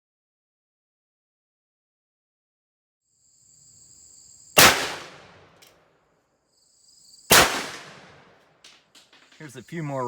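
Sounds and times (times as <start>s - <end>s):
crickets trilling: 3.0s - 5.3s, 6.4s - 8.1s, 8.7s - 10.0s
rifle shots echoing: 4.6s - 5.5s, 7.3s - 8.3s.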